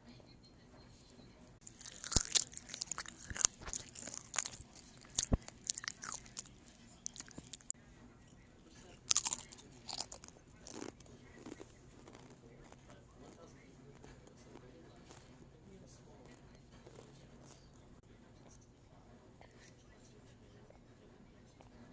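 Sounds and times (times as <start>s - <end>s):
crisp crunching and clicking: 1.6s - 7.7s, 9.0s - 13.4s.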